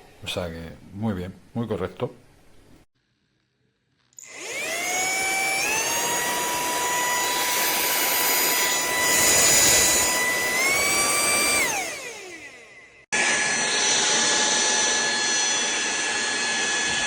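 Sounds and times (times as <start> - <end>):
handheld vacuum motor whine: 4.2 - 17.0.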